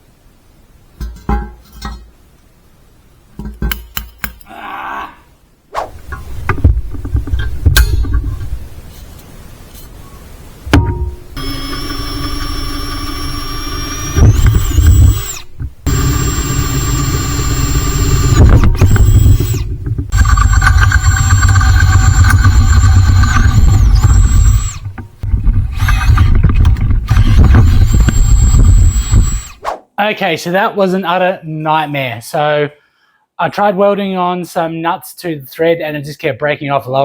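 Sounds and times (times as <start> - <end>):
electric drill drilling metal: 11.4 - 25.0, 25.7 - 29.6.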